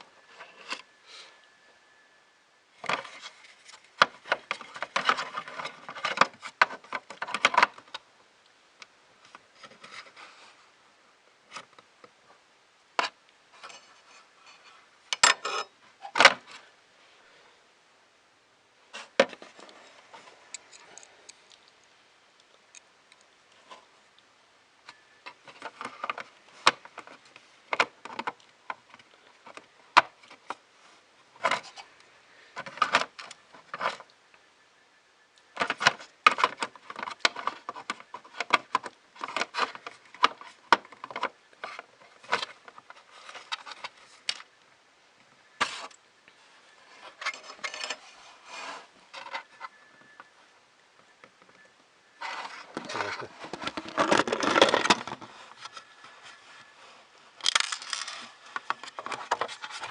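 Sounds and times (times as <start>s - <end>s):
parts scraping: 18.9s - 21.9s, 45.5s - 50.3s, 52.2s - 59.9s
plastic and metal parts clicking: 57.4s - 59.9s.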